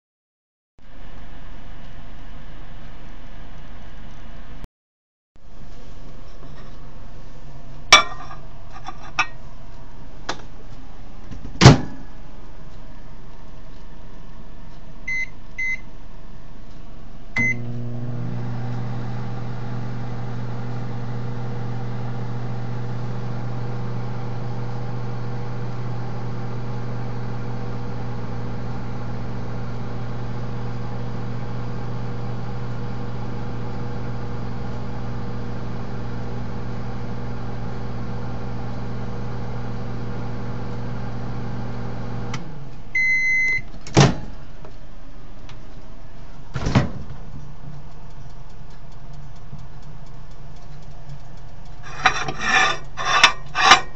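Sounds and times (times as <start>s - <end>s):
microwave oven humming: 11.9s - 45.0s
microwave finished beeps: 15.1s - 15.9s, 17.4s - 24.2s, 43.0s - 43.7s
microwave keypad beeps: 15.1s - 15.9s, 17.4s - 17.6s, 43.0s - 43.7s.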